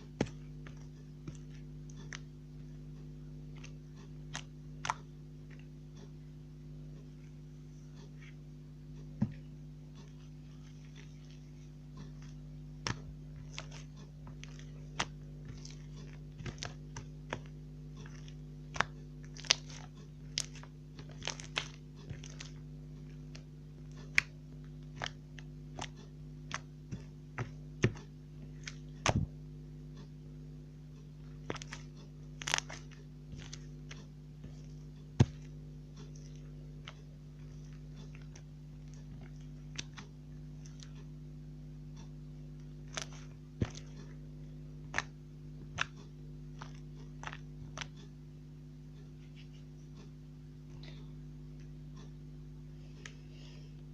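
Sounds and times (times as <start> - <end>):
low hum: 0.0 - 53.9
slime squeezed with sticky pops: 31.4 - 34.6.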